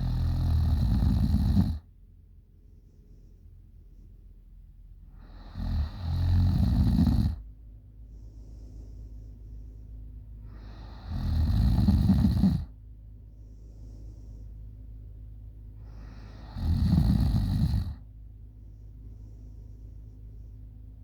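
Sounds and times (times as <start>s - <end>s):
girl snoring loudly: 0.0s - 1.8s, 5.3s - 7.4s, 10.7s - 12.7s, 16.4s - 18.0s
steady low hum: 0.0s - 21.0s.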